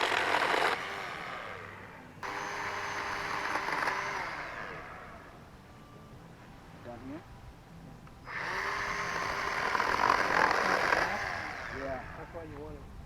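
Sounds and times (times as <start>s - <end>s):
battery chainsaw whining: 0.0s - 5.3s, 8.3s - 12.3s.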